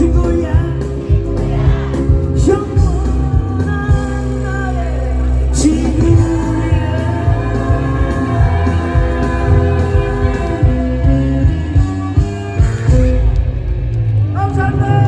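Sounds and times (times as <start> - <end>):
man singing: 0.0 - 10.9
pop band music: 0.0 - 13.2.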